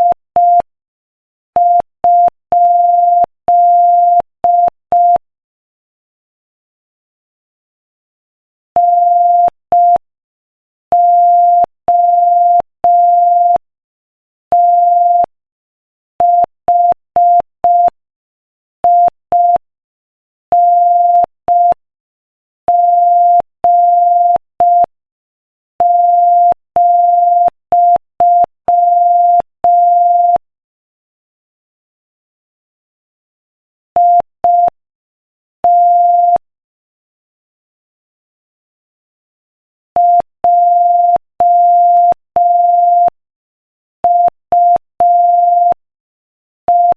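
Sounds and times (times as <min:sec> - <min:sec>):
morse code beeps: 0:22.7 - 0:24.9, 0:25.8 - 0:30.4, 0:34.0 - 0:34.8, 0:35.6 - 0:36.4, 0:40.0 - 0:43.2, 0:44.0 - 0:45.8, 0:46.7 - 0:46.9.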